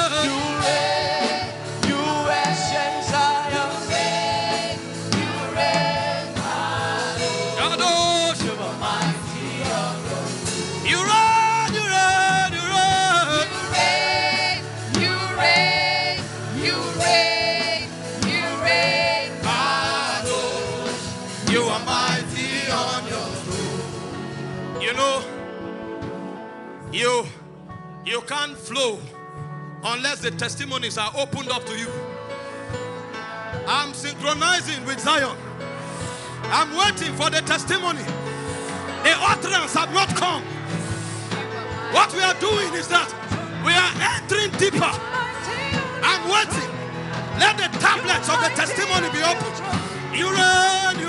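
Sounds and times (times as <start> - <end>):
instrumental backing: 0.0 - 51.0
voices singing slow chant: 0.4 - 7.8, 13.2 - 24.3.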